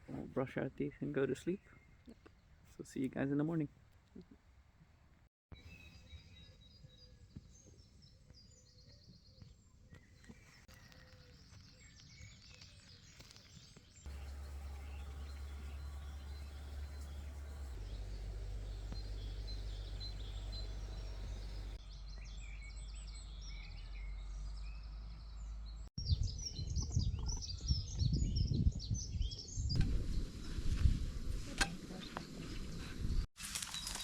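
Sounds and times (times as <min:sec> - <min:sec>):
wild birds chirping and singing: 0:05.6 - 0:29.8
wind rumble on microphone: 0:26.0 - 0:33.3.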